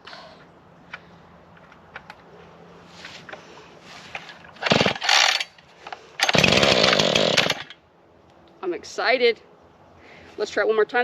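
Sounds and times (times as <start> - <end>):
starter rope pulled: 3.0 - 7.8.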